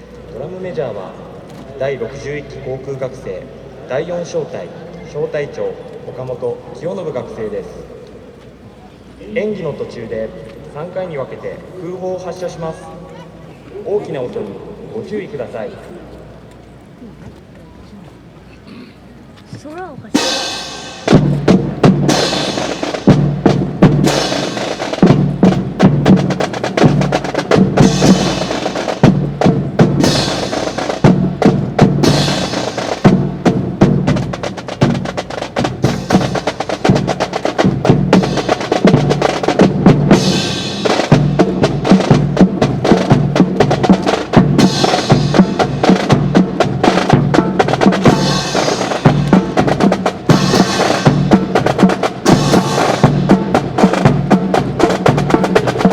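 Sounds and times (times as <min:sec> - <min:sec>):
marching snare and bass drums: 0:19.5 - 0:55.9.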